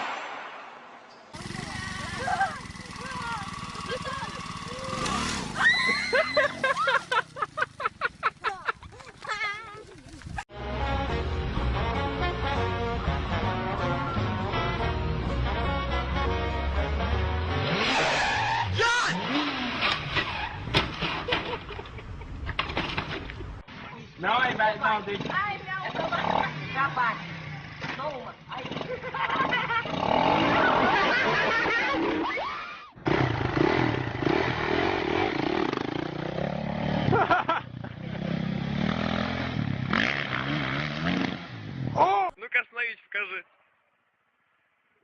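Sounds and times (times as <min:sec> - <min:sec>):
motorcycle engine revving: 0:01.2 - 0:08.3, 0:17.2 - 0:21.3, 0:24.2 - 0:32.2, 0:33.0 - 0:42.1
tyre skid: 0:17.7 - 0:21.9
person shouting: 0:18.8 - 0:19.2
knocks and clatter: 0:22.5 - 0:23.5.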